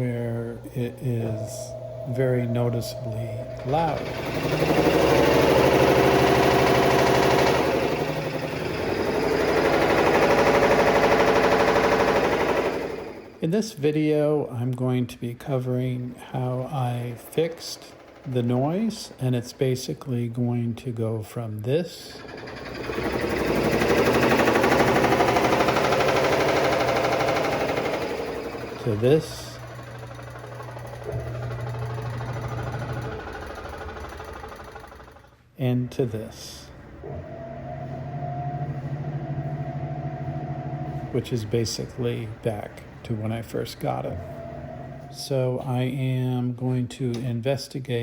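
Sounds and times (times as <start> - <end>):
motor hum: 0.0 - 13.5, 15.5 - 21.0, 22.0 - 46.0
washing machine knocking: 0.6 - 13.4, 22.2 - 35.2, 36.7 - 41.2.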